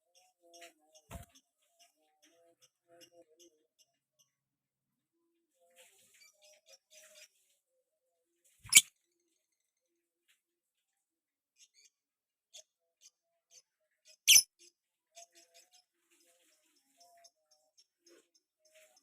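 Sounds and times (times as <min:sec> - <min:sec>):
soft bird chirps: 0:00.0 - 0:04.4, 0:05.6 - 0:07.8, 0:08.5 - 0:09.7, 0:11.6 - 0:19.0
lovebird shrill squeaks: 0:08.7 - 0:08.9.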